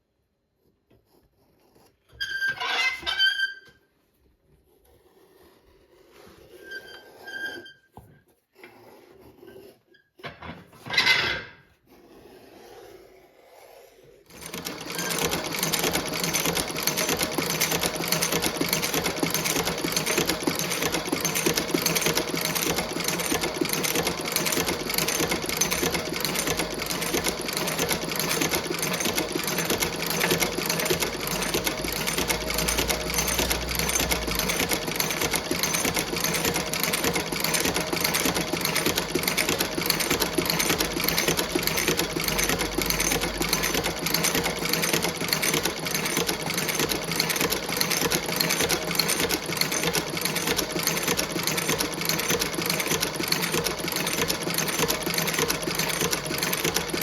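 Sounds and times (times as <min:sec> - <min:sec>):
stitching machine running: 0:14.3 - 0:57.0.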